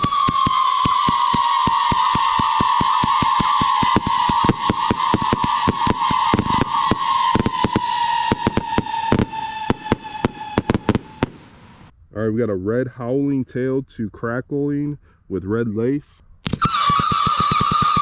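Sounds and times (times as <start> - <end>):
firework crackling pops: 0.0 - 11.9, 16.4 - 18.0
firework high whistle: 0.0 - 11.9, 16.5 - 18.0.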